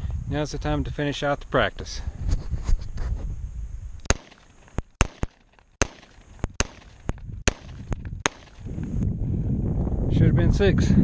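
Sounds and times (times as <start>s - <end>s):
handgun shots: 4.1s - 8.7s.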